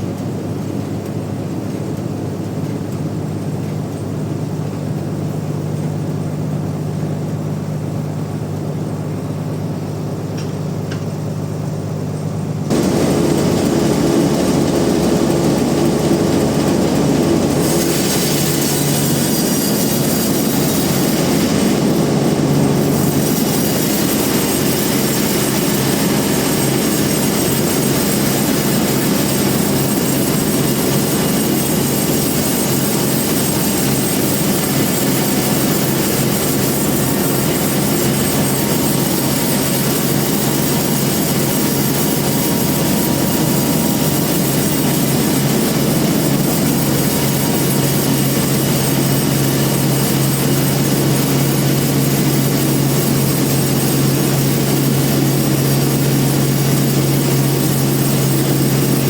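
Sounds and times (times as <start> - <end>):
sawmill machinery humming: 0.0 - 59.0
harsh rushing noise: 12.7 - 59.0.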